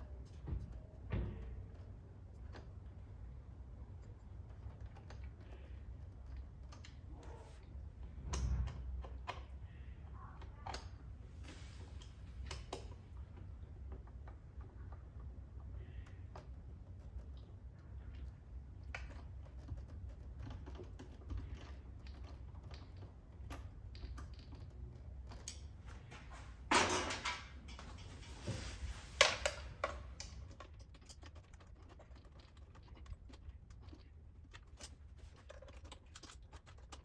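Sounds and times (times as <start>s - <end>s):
rustling scrape: 27.8s - 29.8s.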